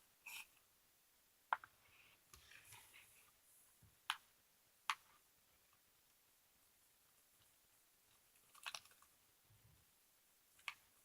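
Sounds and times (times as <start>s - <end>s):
faint soft rustling: 1.8s - 4.0s.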